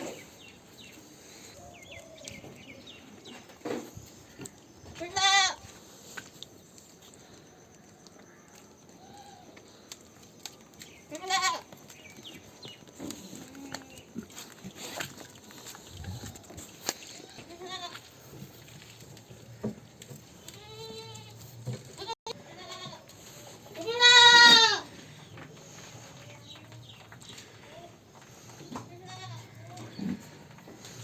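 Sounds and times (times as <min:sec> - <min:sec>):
goats bleating: 0:05.0 - 0:05.6, 0:11.1 - 0:11.7, 0:17.2 - 0:18.1, 0:22.0 - 0:23.1, 0:23.7 - 0:24.9, 0:28.8 - 0:29.9.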